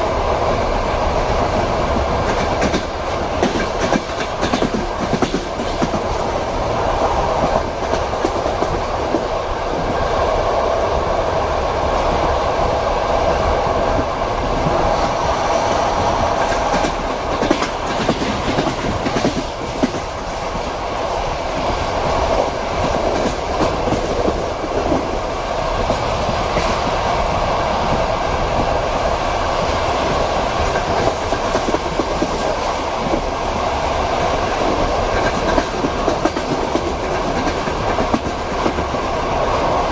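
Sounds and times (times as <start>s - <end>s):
train rolling rumble: 0.0s - 39.9s
wheels clacking over rail joints: 1.4s - 6.4s, 14.4s - 20.8s, 34.4s - 39.1s.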